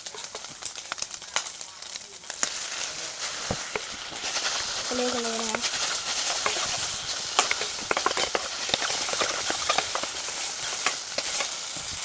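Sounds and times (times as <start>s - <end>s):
noodles and egg sizzling in oil: 0.0s - 12.0s
spatula scraping against pan: 2.5s - 12.0s.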